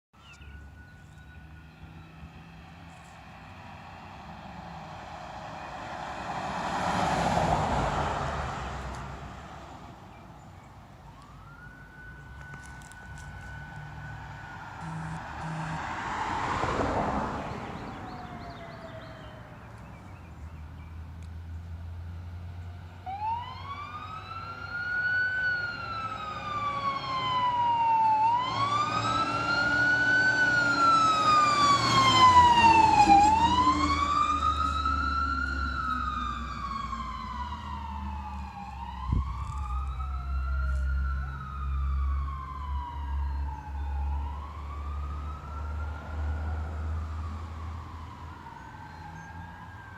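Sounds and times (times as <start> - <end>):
vehicle rumble on road: 0.2 - 49.9
siren wailing: 11.1 - 19.5, 23.0 - 49.9.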